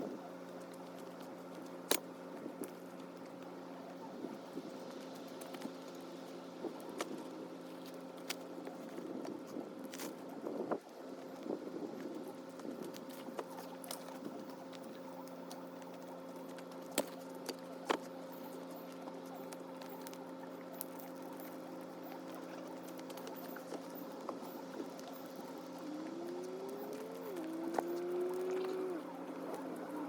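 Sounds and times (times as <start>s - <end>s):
steady hum: 0.0s - 30.0s.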